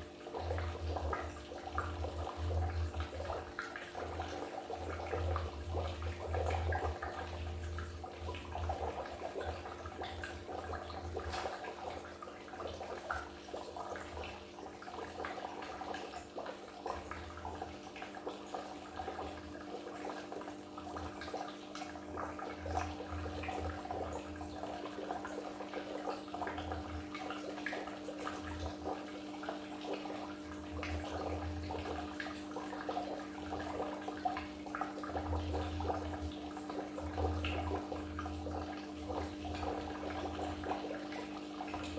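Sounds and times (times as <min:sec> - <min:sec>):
aquarium water splashing: 0:00.0 - 0:41.9
steady low hum: 0:21.8 - 0:41.9.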